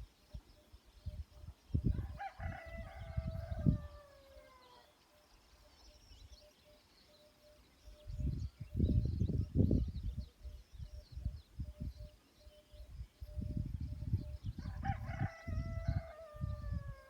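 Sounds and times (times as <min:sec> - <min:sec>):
faint high bird chirps: 0:00.0 - 0:17.0
rooster crowing: 0:01.9 - 0:04.9, 0:14.6 - 0:17.0.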